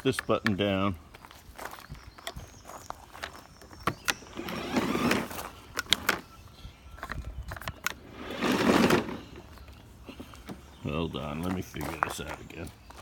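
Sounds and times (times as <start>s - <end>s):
lawn mower controls clicking and rattling: 3.2s - 6.4s, 7.0s - 10.6s.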